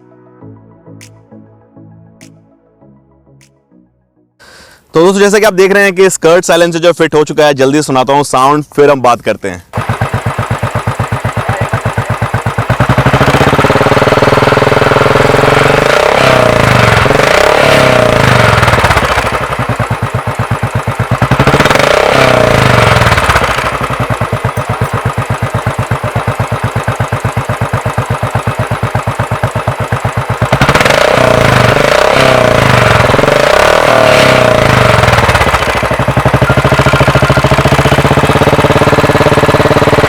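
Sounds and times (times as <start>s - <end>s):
motorcycle engine idling and revving: 9.7s - 40.0s.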